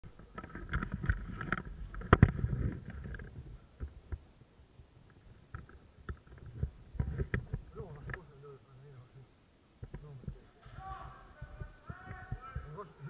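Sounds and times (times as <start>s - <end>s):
rustling and light knocks: 0.2s - 4.3s, 5.0s - 8.3s.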